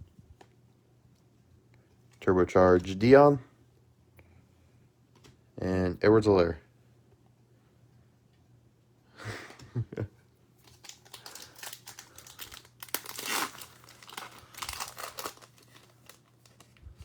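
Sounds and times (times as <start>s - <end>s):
foil wrapper crinkling: 10.6s - 17.0s.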